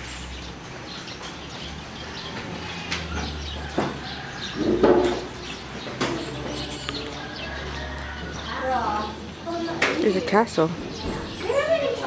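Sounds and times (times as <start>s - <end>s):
birds chirping: 0.0s - 12.0s
sharp knocks: 4.6s - 5.3s.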